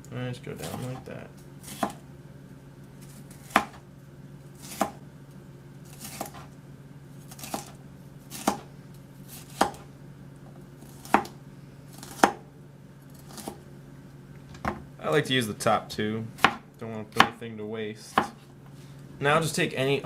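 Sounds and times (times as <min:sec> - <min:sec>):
knife slicing on cutting board: 0:01.6 - 0:02.0, 0:03.0 - 0:03.8, 0:04.6 - 0:05.0, 0:05.9 - 0:06.5, 0:07.3 - 0:08.7.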